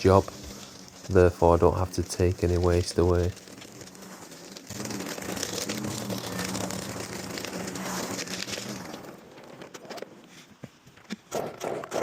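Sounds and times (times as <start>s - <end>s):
lawnmower humming: 0.0s - 9.4s
twigs and leaves crackling: 0.0s - 10.8s.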